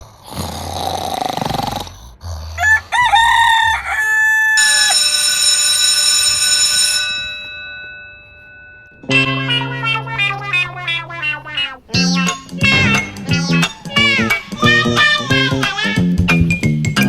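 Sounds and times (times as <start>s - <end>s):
rooster crowing: 2.6s - 5.3s
bright ringing tone: 4.6s - 15.4s.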